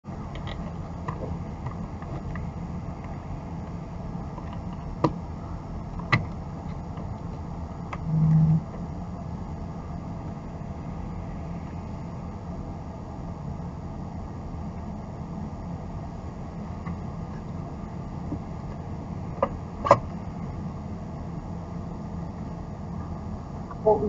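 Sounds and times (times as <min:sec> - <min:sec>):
car interior rumble: 0:00.1 - 0:24.0
brief low tone: 0:08.0 - 0:08.7.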